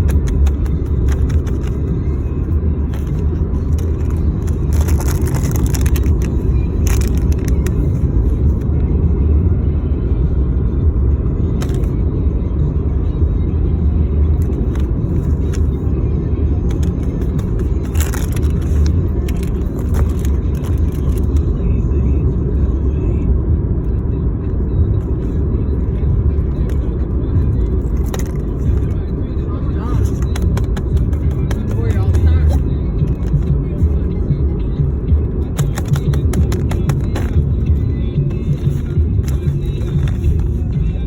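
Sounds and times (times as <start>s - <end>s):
crackling rustles: 2.9s - 8.0s, 16.7s - 21.4s.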